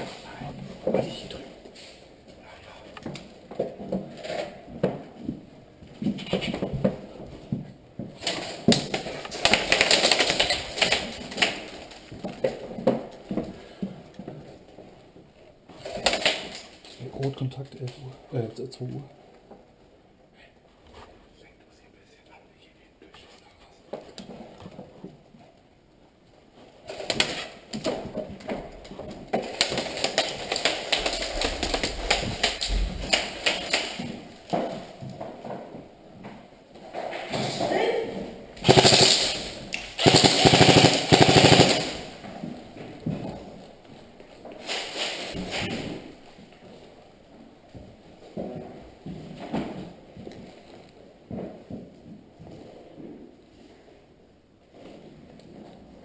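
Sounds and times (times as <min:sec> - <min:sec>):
airsoft guns firing: 0:08.2 - 0:11.8, 0:29.4 - 0:34.2, 0:38.6 - 0:42.2
pellets smacking against surfaces: 0:08.2 - 0:13.5, 0:15.8 - 0:17.0, 0:26.8 - 0:35.4, 0:38.6 - 0:43.5, 0:44.6 - 0:46.2.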